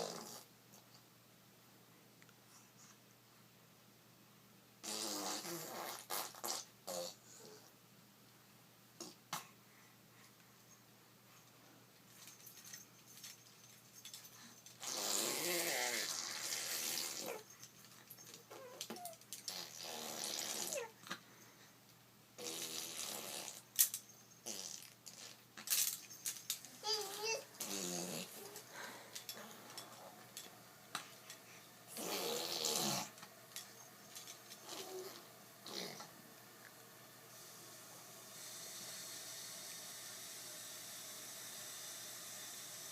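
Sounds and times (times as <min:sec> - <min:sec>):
person making hissing vocal sound: 0:14.8 - 0:17.5, 0:19.5 - 0:21.0, 0:26.7 - 0:30.1, 0:31.9 - 0:33.2, 0:34.6 - 0:36.1, 0:38.2 - 0:42.9
child making rasping vocal noises: 0:26.8 - 0:28.6.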